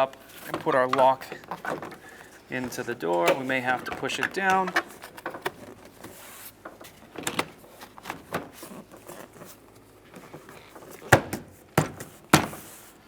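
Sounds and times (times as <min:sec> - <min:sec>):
plastic panel scraping and clicking: 0:00.0 - 0:12.8
plastic panel knocks: 0:11.1 - 0:12.7.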